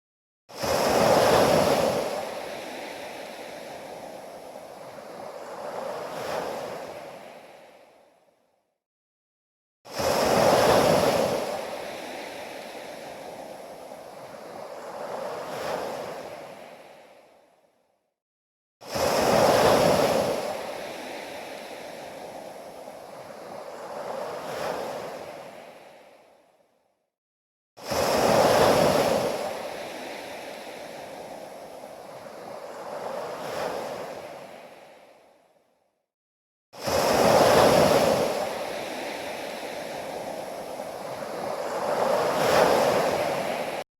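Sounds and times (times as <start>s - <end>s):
surf wave rushing in: 36.8s - 43.8s.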